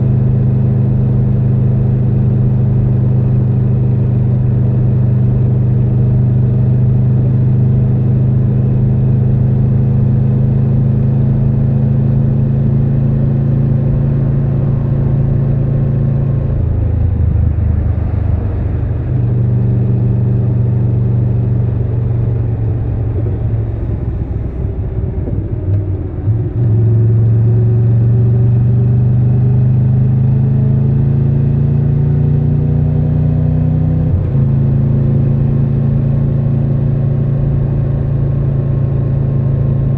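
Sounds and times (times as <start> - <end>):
motorcycle engine running: 0.0 - 31.1.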